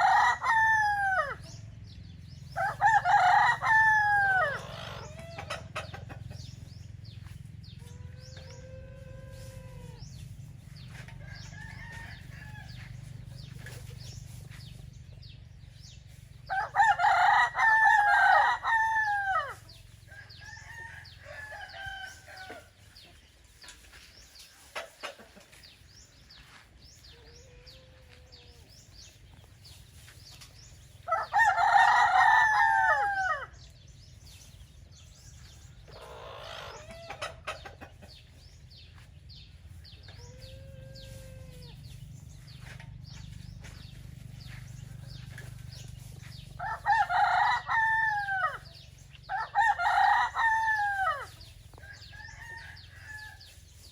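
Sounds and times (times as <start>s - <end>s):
rooster crowing: 0.0s - 1.4s, 2.6s - 5.4s, 11.2s - 12.9s, 16.5s - 22.7s, 31.1s - 33.6s, 46.6s - 53.5s
chickens calling: 0.0s - 53.9s.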